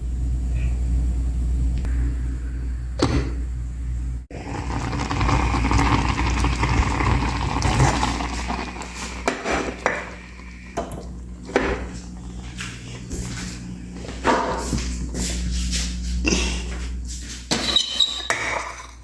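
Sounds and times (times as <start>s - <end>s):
steady low hum: 0.0s - 17.6s.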